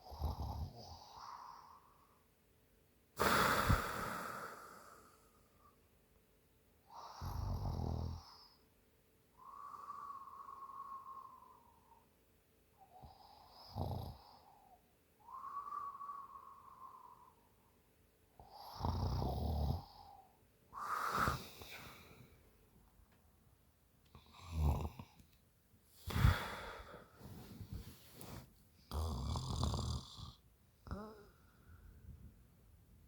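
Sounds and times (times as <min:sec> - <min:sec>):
woman snoring: 0:00.0 - 0:01.7, 0:03.2 - 0:05.2, 0:06.9 - 0:08.5, 0:13.0 - 0:14.5, 0:18.4 - 0:20.1, 0:20.8 - 0:22.0, 0:24.2 - 0:25.2, 0:28.9 - 0:31.4
whistling breaths: 0:09.3 - 0:12.1, 0:15.2 - 0:17.7.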